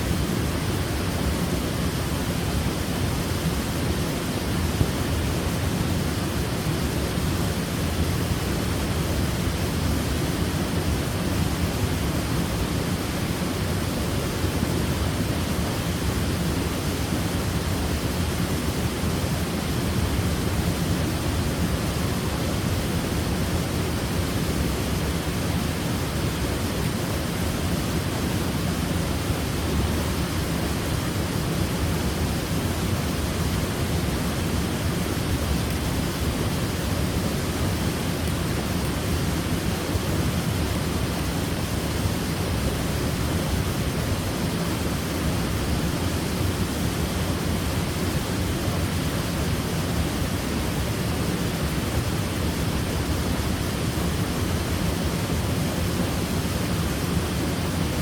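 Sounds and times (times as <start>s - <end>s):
waterfall rushing: 18.5s - 51.7s.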